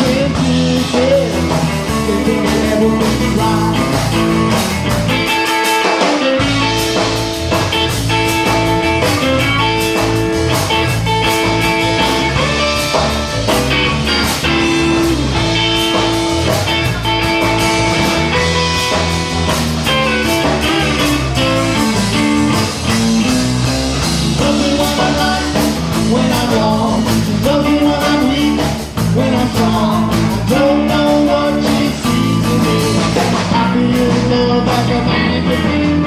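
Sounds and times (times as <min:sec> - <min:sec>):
blues rock band playing: 0:00.0 - 0:36.0
electric guitar lead: 0:00.0 - 0:36.0.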